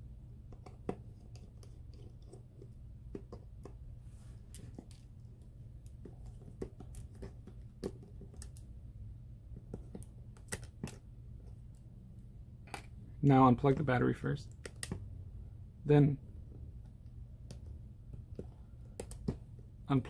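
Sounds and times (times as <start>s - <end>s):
screwdriver clicks and taps: 18.3s - 19.4s.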